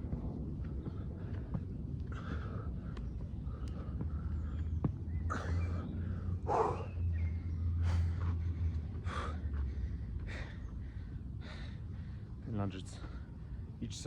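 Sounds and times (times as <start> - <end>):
low steady hum: 0.0 - 14.0
man breathing hard: 2.0 - 4.7, 5.3 - 6.9, 7.7 - 13.8.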